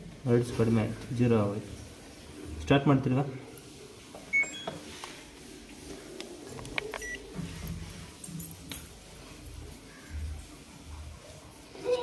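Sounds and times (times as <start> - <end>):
washing machine beeping: 4.3 - 4.9, 6.8 - 7.3.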